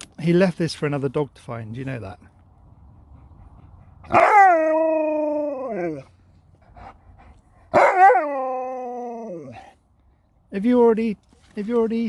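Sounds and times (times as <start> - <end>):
dog howling: 4.1 - 6.0, 7.8 - 9.6.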